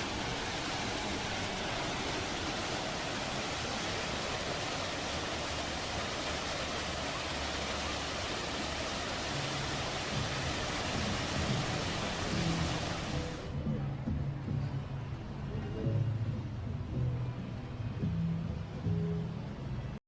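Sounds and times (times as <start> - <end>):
steady rushing hiss: 0.0 - 13.6.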